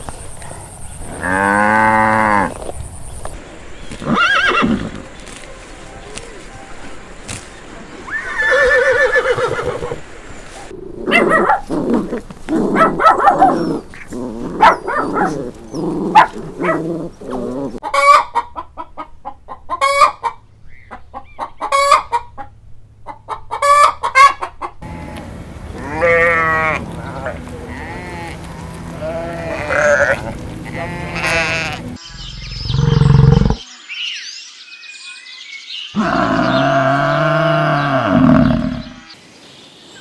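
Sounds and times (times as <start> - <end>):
sheep bleating: 1.2 - 2.6, 24.8 - 32.0, 36.0 - 39.1
horse whinny: 4.0 - 5.1, 8.1 - 10.0, 29.0 - 31.9, 36.0 - 39.1
chickens clucking: 10.7 - 32.0.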